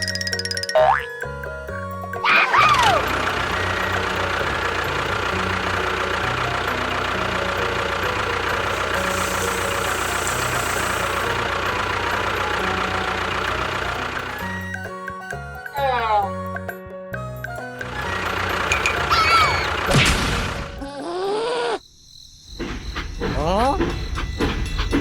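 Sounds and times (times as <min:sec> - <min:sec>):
engine running steadily: 0:01.3 - 0:20.8.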